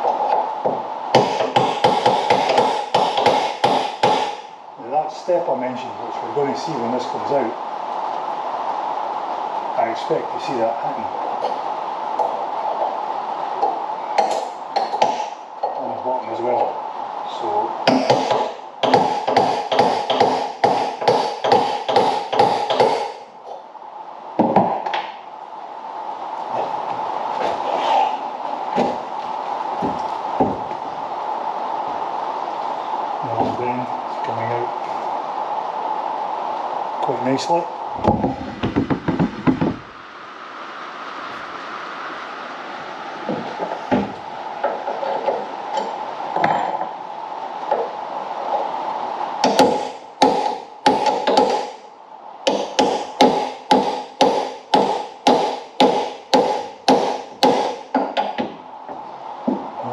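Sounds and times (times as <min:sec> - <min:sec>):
steady hum: 0:00.0 - 0:59.9
hammer striking metal: 0:01.2 - 0:04.4, 0:17.9 - 0:23.2, 0:49.4 - 0:51.7, 0:52.5 - 0:58.3.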